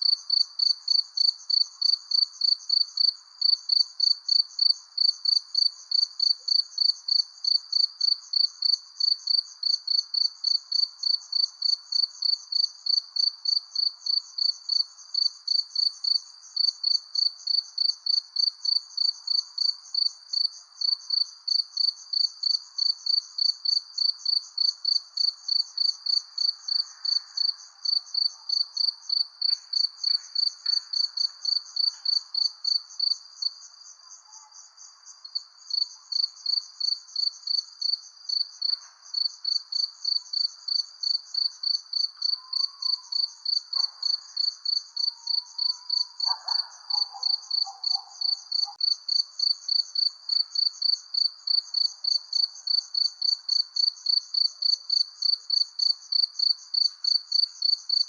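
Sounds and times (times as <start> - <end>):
cricket chirping: 0.0 - 58.0.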